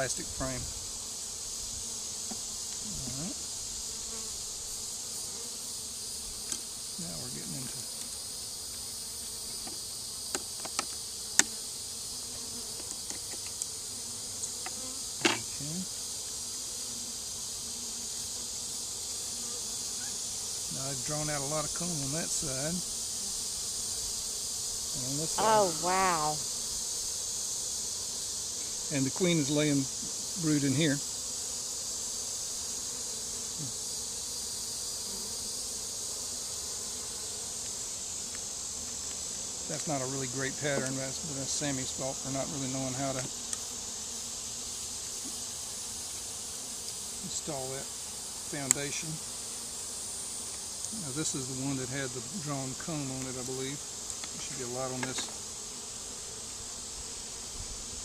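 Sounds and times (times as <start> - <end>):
bees buzzing: 0.0 - 58.0
steady high hiss: 0.0 - 58.0
hive frames clicking and knocking: 9.5 - 11.6, 12.7 - 13.8, 54.0 - 55.4.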